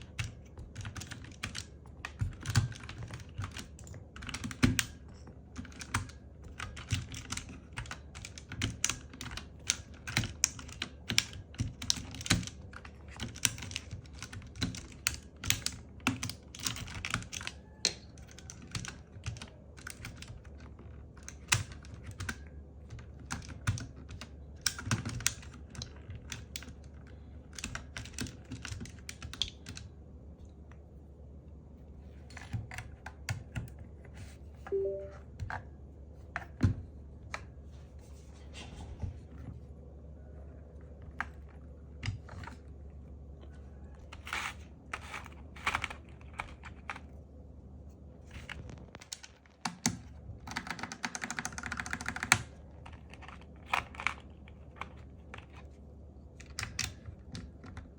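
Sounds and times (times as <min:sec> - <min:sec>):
mechanical keyboard typing: 0:00.0 - 0:26.8, 0:27.4 - 0:29.9, 0:34.7 - 0:35.2, 0:44.2 - 0:47.0, 0:48.3 - 0:55.7.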